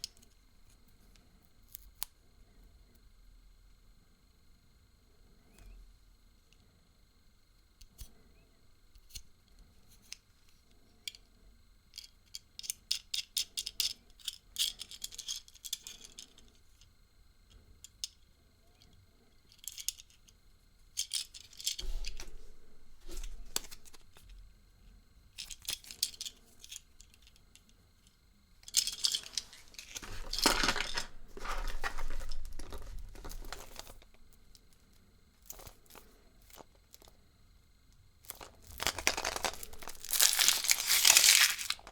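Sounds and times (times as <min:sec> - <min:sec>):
small plastic clicks and rattles: 0:11.9 - 0:16.9, 0:18.8 - 0:20.4, 0:25.4 - 0:37.2, 0:37.9 - 0:41.9
wrapping crinkling and tearing: 0:29.0 - 0:34.0, 0:38.3 - 0:41.9.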